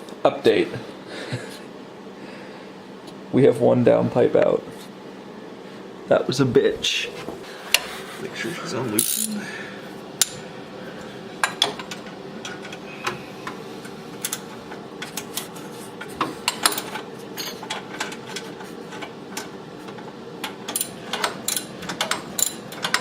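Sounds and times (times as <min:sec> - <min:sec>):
steady low hum: 0:00.0 - 0:23.0
hand tools clicking and clinking: 0:09.0 - 0:09.4, 0:20.4 - 0:23.0.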